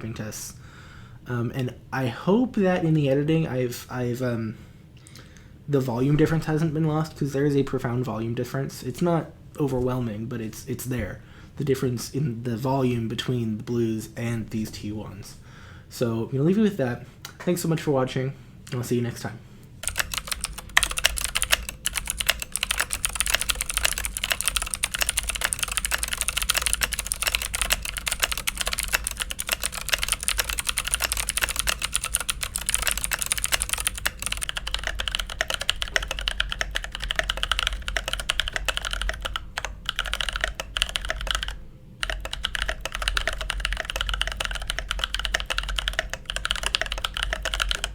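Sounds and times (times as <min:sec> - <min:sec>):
mechanical keyboard typing: 0:19.8 - 0:47.9.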